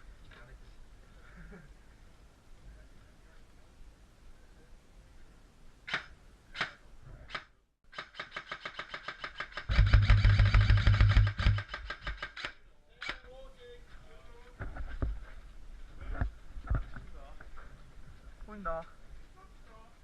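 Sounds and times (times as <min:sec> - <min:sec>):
airsoft gun firing: 0:05.9 - 0:13.2.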